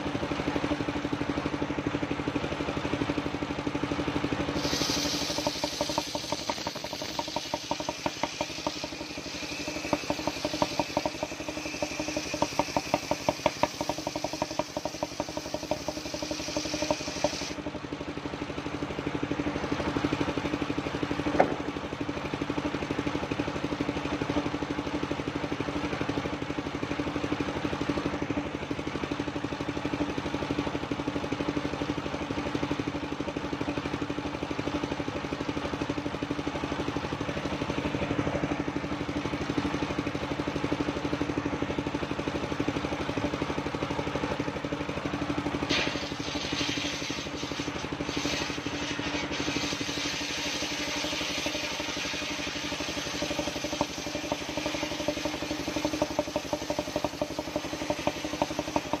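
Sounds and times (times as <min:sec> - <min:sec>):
sawmill engine and spinning blade: 0:00.0 - 0:59.0
blade cutting log with clatter: 0:04.6 - 0:17.6, 0:45.6 - 0:59.0.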